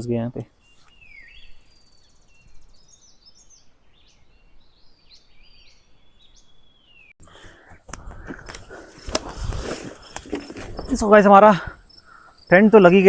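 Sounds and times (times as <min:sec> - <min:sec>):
small birds singing: 0:00.0 - 0:13.0
rustling: 0:07.7 - 0:11.3.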